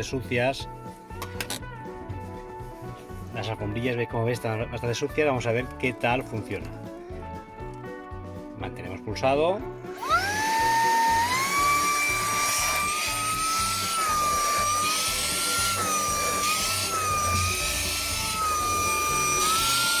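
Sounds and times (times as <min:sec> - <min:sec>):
handheld vacuum motor whine: 0:09.9 - 0:20.0.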